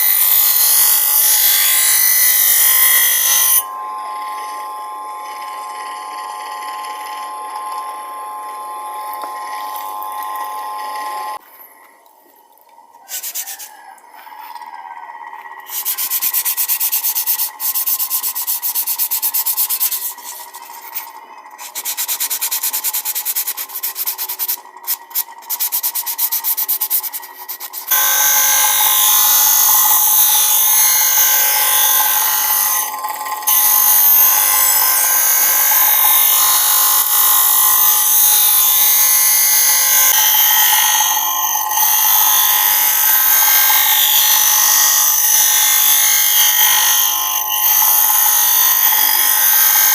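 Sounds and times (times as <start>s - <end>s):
blade grinding on sharpener: 0.0s - 11.4s, 13.1s - 49.9s
steady high whine: 3.6s - 13.0s.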